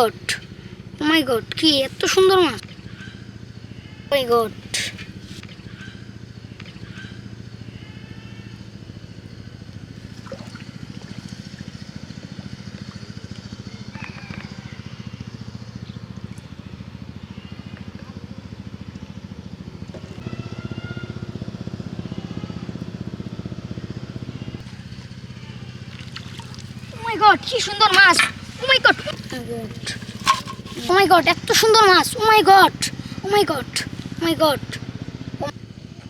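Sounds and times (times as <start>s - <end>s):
motor humming: 0.0s - 15.6s, 23.8s - 35.6s.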